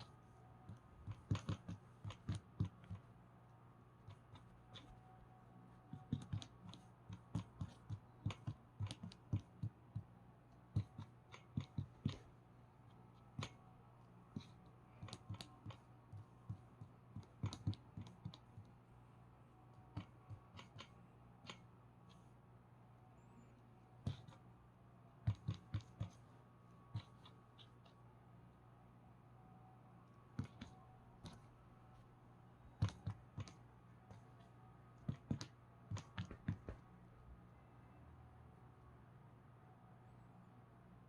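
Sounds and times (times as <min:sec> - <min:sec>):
faint steady hum: 0:00.0 - 0:41.0
cord tapping on floor: 0:35.1 - 0:36.8.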